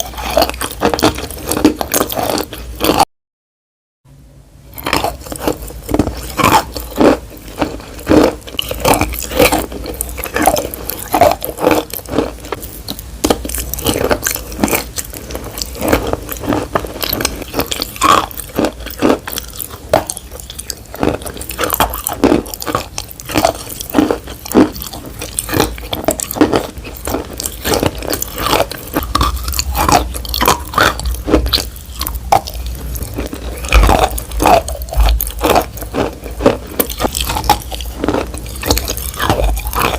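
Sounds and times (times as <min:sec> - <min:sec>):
crunchy food being chewed: 0:00.0 - 0:03.1, 0:04.7 - 0:39.9.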